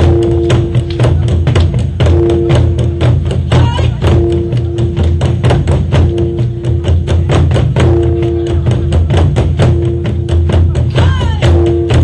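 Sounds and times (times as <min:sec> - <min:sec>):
drum ensemble fast rhythm: 0:00.0 - 0:12.0.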